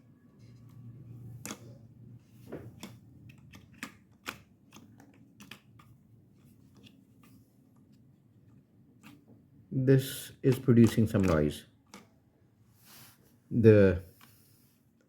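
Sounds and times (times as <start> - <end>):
light clicks and taps: 10.5 - 12.1.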